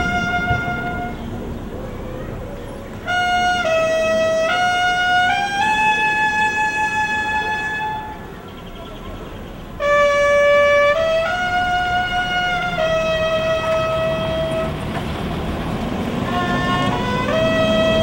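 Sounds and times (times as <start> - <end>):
trumpet call of held notes: 0.0 - 1.5, 3.0 - 8.4, 9.8 - 14.9, 16.2 - 18.0.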